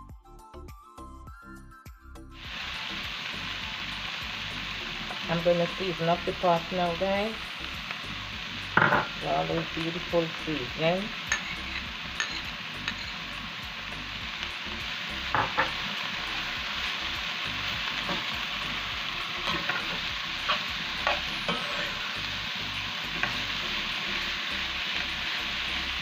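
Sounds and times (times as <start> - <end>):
aromatics sizzling in oil: 2.4 - 26.0
utensil knocking against pan: 8.8 - 9.1, 15.3 - 15.8.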